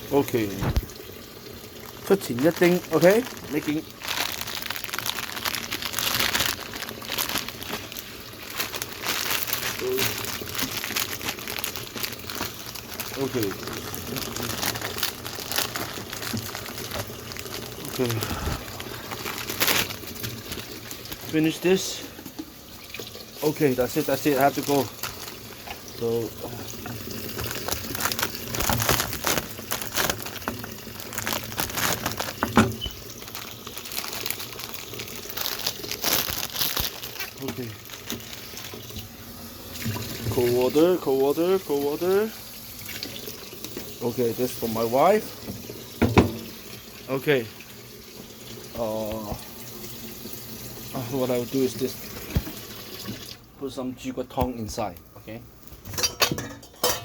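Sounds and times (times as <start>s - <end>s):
plastic packet crinkling: 0.3s - 22.0s, 22.9s - 39.1s.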